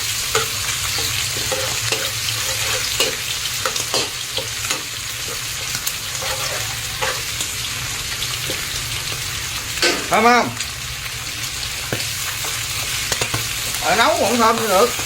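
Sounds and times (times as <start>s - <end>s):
meat sizzling in a pan: 0.0s - 15.0s.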